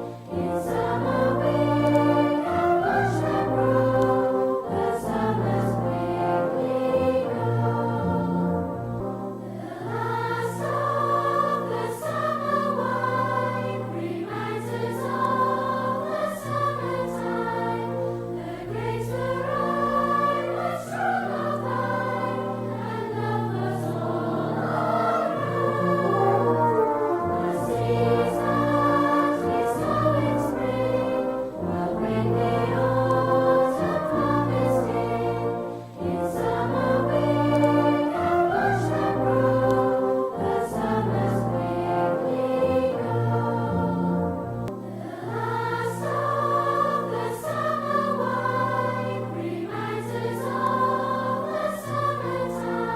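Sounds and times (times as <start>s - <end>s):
choir with orchestral accompaniment: 0.0s - 52.9s.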